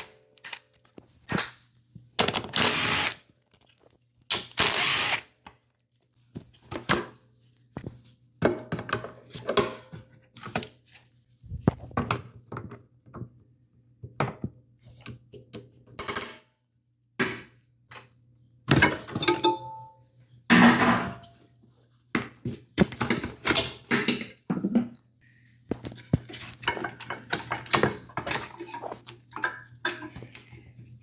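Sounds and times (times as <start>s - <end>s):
metal tools clanking: 18.8s - 19.9s.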